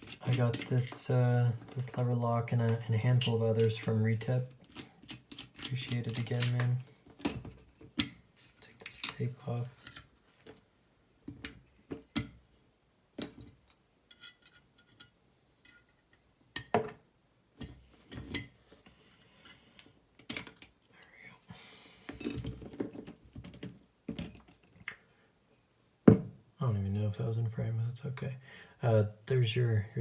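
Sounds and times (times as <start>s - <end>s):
metallic clicks of lock parts: 4.6s - 7.4s.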